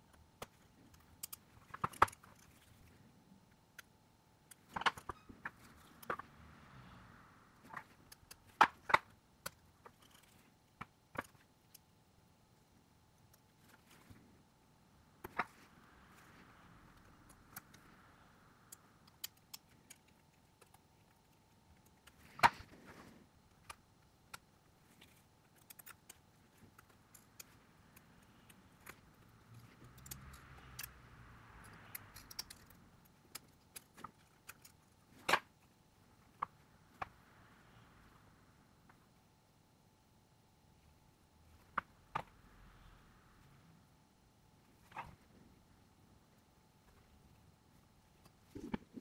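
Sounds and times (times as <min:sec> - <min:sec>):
small tools clicking on work surface: 0:26.8 - 0:31.0, 0:31.6 - 0:34.8.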